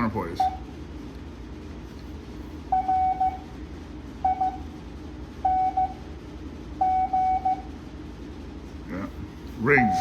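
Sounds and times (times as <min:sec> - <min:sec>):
morse code beeps: 0:02.7 - 0:03.5, 0:04.2 - 0:04.7, 0:05.4 - 0:06.0, 0:06.8 - 0:07.8, 0:09.8 - 0:10.0.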